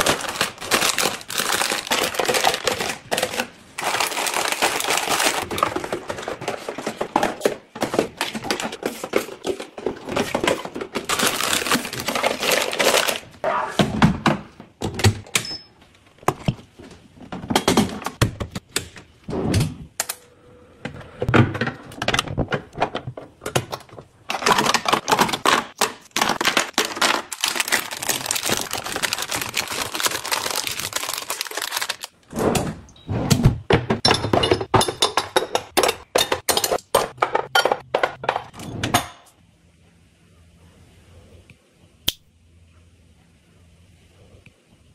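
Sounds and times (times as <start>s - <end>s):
packaging rustling and clicking: 0.0s - 13.3s, 23.6s - 32.2s
items knocking when set down: 4.8s - 11.4s.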